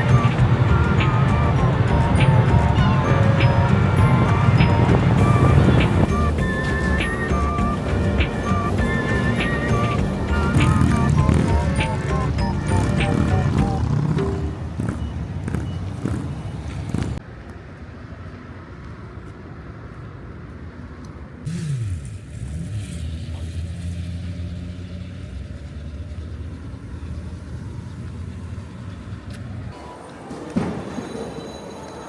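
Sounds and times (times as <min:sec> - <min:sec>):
vehicle engine running: 0:00.0 - 0:17.2.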